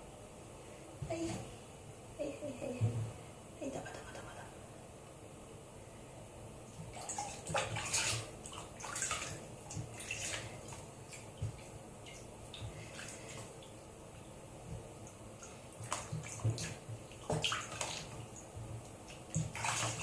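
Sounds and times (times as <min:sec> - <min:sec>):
water splashing and sloshing: 0:06.7 - 0:20.0.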